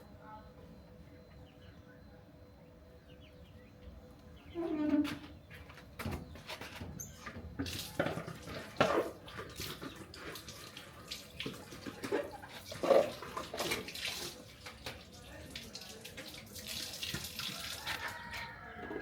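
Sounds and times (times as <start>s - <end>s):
water splashing and running: 7.6s - 18.2s.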